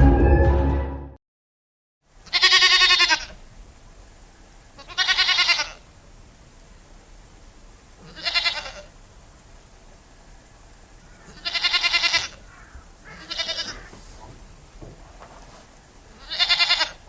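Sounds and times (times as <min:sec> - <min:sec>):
goat bleating: 0:02.2 - 0:03.4, 0:04.8 - 0:05.8, 0:08.0 - 0:08.9, 0:11.2 - 0:14.4, 0:16.2 - 0:17.0.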